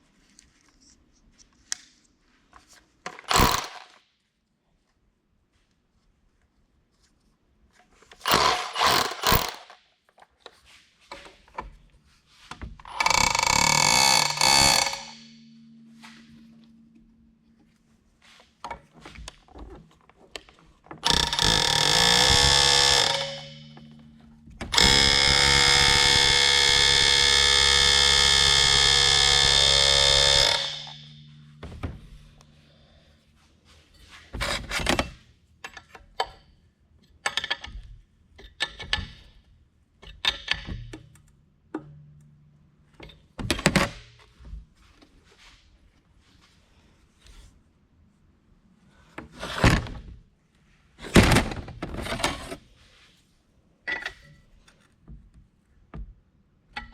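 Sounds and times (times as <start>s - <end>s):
power tool buzzing: 3.2s - 3.9s, 8.2s - 9.7s, 12.9s - 16.2s, 21.0s - 24.0s, 24.7s - 31.9s.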